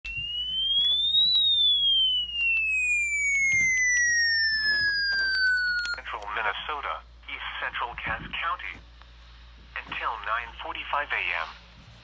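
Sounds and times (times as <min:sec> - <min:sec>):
rising and falling alert tone: 0:00.1 - 0:06.0
clicks and crackle: 0:00.1 - 0:06.4.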